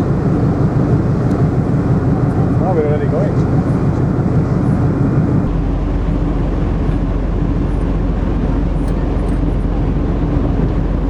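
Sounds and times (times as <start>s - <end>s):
ferry engines rumbling: 0.0s - 11.0s.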